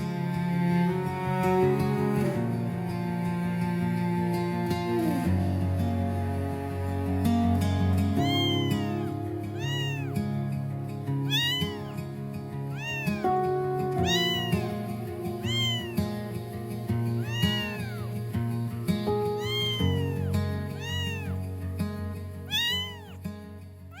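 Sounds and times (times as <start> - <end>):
cat meowing: 8.2 - 10.2, 11.3 - 12.1, 12.7 - 16.3, 17.1 - 18.2, 19.2 - 21.5, 22.5 - 23.2.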